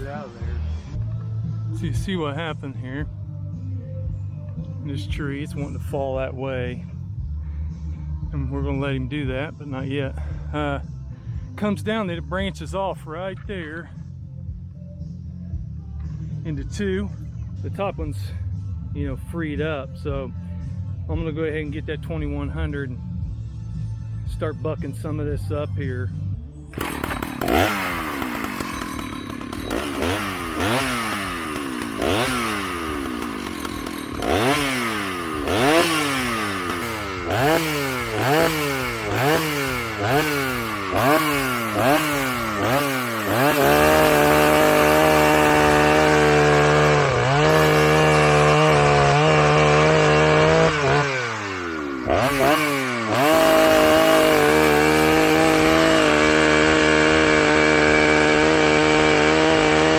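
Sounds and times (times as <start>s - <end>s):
chainsaw revving: 0.0s - 2.7s, 26.7s - 59.9s.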